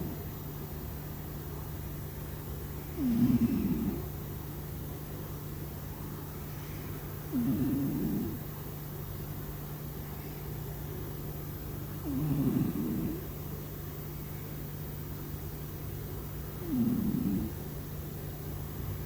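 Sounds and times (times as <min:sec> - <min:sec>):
steady low hum: 0:00.0 - 0:19.0
kitten snoring: 0:02.9 - 0:04.1, 0:07.3 - 0:08.5, 0:12.0 - 0:13.3, 0:16.6 - 0:17.6.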